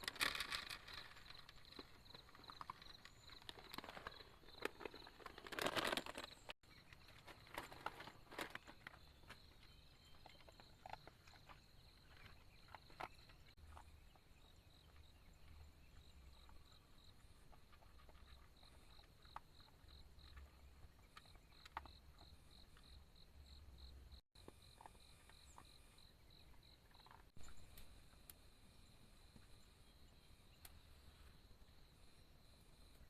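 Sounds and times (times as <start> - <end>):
insect chirping: 8.0 - 33.0.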